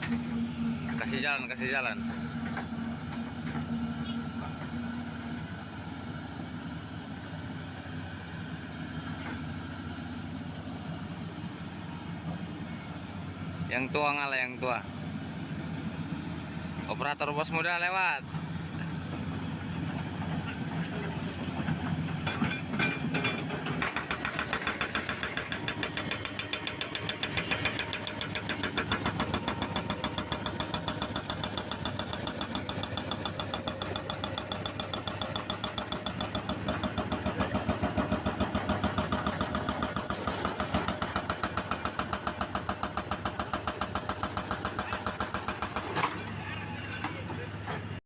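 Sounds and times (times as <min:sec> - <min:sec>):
excavator diesel engine: 0:00.0 - 0:48.0
hydraulic breaker hammering concrete: 0:23.2 - 0:46.1.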